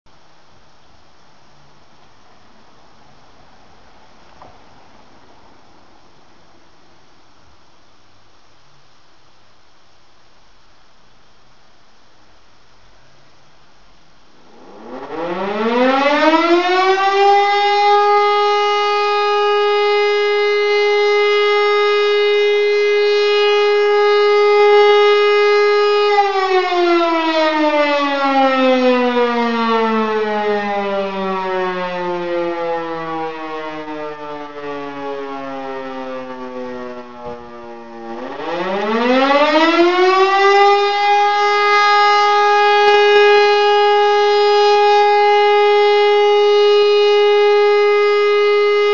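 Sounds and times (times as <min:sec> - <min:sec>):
motor siren wailing: 0:14.4 - 0:48.9.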